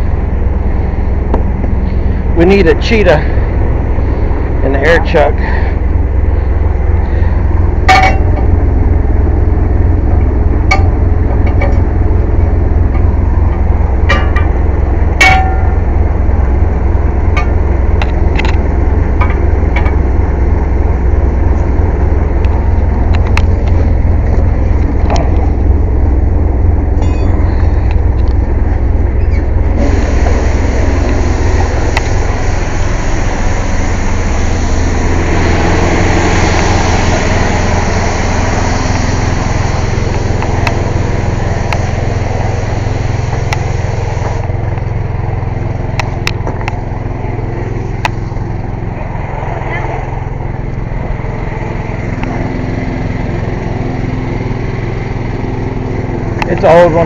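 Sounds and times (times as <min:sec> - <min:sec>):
air compressor engine droning: 0:00.0 - 0:57.0
compressed air hissing: 0:29.2 - 0:44.5.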